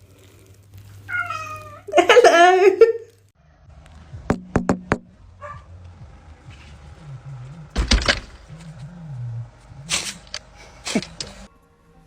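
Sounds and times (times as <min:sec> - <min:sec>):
dog making low vocal sounds: 0:08.4 - 0:10.4.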